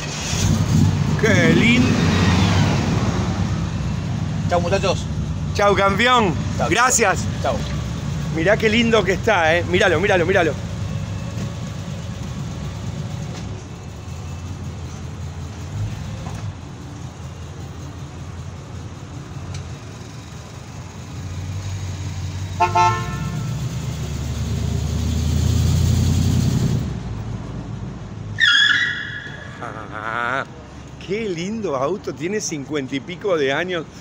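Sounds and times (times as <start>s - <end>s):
car engine rumbling: 0.0s - 31.4s
car horn toot: 22.6s - 23.6s, 28.4s - 29.6s.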